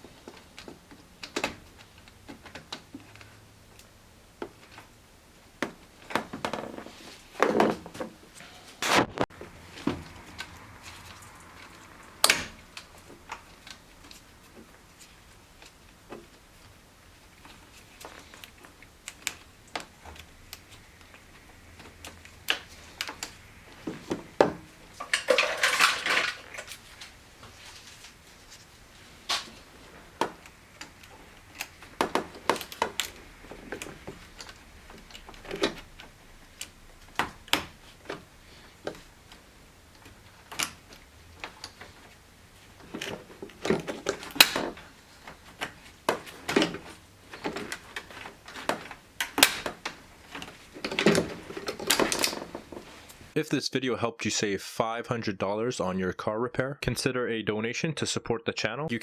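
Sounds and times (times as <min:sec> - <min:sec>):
hand tools clicking on parts: 0:05.6 - 0:53.4
rattling scrape: 0:06.6 - 0:11.8, 0:24.9 - 0:29.7.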